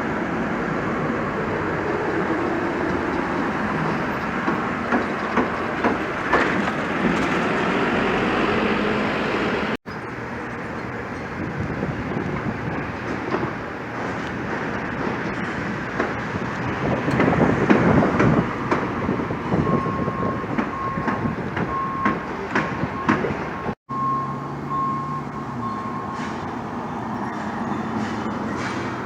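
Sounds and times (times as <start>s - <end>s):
construction machinery rumbling: 0.0s - 29.0s
scattered knocks: 2.8s - 7.7s, 12.4s - 18.9s
reversing alarm beeping: 18.5s - 28.7s.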